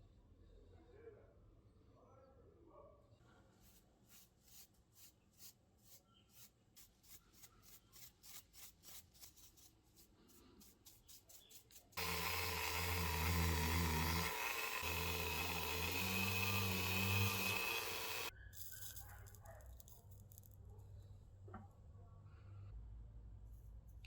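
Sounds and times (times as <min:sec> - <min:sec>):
electric motor humming: 0:12.0 - 0:18.3.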